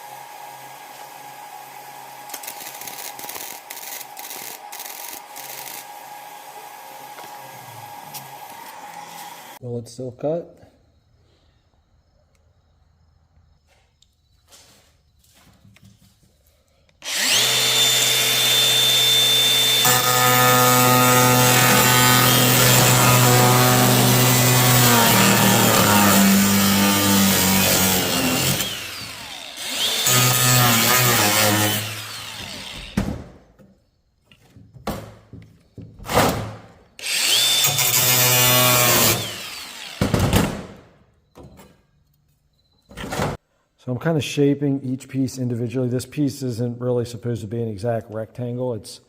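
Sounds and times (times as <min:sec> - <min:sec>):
angle grinder whining: 0:00.0 - 0:09.6, 0:17.0 - 0:33.0, 0:37.0 - 0:40.2
grinder cutting sheet steel: 0:00.0 - 0:09.6, 0:17.0 - 0:33.0, 0:37.0 - 0:40.2.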